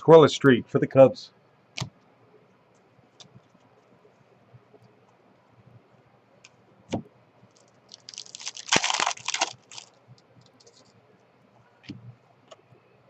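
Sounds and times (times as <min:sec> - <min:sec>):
wrapper tearing and crinkling: 0:07.5 - 0:10.9.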